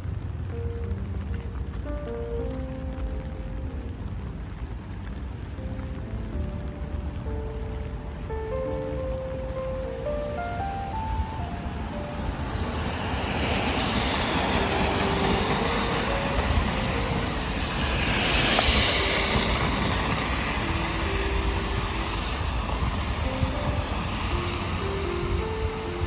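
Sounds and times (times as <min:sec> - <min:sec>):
soft background music: 0:00.0 - 0:26.0
vehicle passing: 0:05.3 - 0:26.0.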